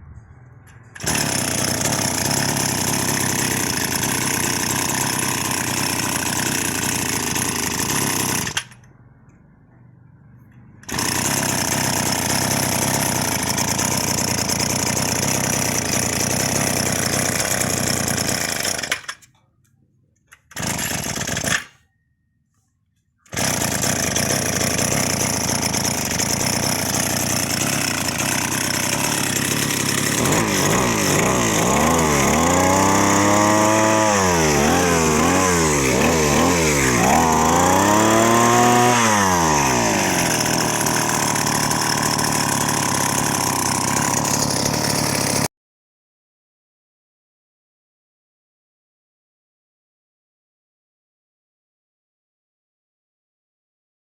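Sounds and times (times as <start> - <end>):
brush cutter engine running: 0.9 - 8.9, 10.8 - 19.3, 20.4 - 21.8, 23.3 - 45.5.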